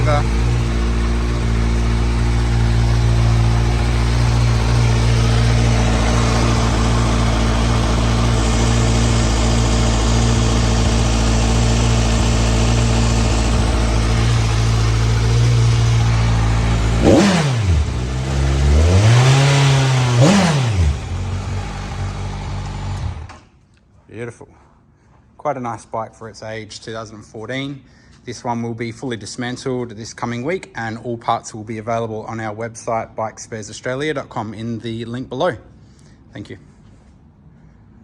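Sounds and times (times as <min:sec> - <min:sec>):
motorcycle engine idling and revving: 0:00.0 - 0:23.5.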